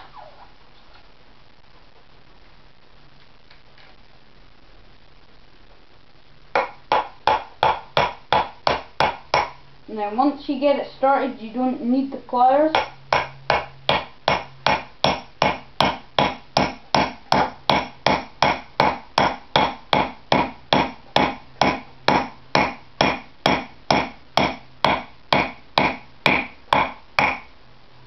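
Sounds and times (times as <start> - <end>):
hammer striking wedge: 6.6 - 9.6, 12.7 - 27.5.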